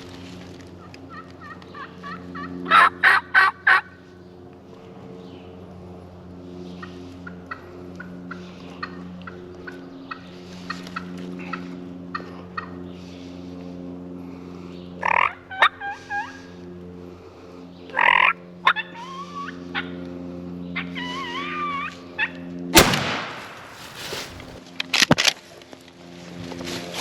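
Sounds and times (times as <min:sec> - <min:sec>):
low hum: 0:00.0 - 0:27.0
turkey clucking: 0:01.1 - 0:03.9, 0:06.8 - 0:12.8, 0:15.0 - 0:16.5, 0:17.9 - 0:20.0
turkey yelping calls: 0:01.1 - 0:03.9, 0:08.3 - 0:09.4, 0:15.0 - 0:16.5, 0:17.9 - 0:20.0, 0:20.8 - 0:22.4.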